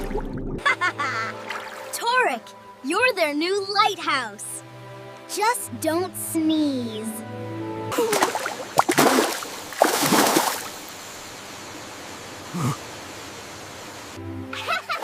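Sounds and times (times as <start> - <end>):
water gurgle: 0.0 - 0.6, 8.0 - 10.9
water splashing: 1.2 - 2.0, 7.9 - 11.0.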